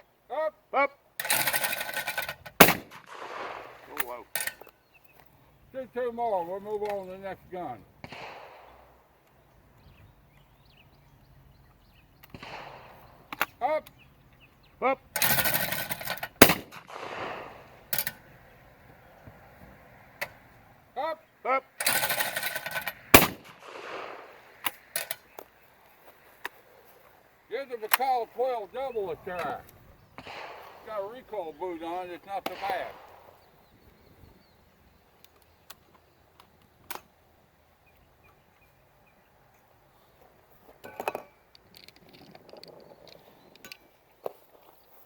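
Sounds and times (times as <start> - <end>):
shotgun shots with echo: 2.6 - 4.3, 8.0 - 9.0, 12.3 - 13.4, 16.4 - 18.2, 23.1 - 24.6, 30.2 - 31.5, 32.4 - 33.6.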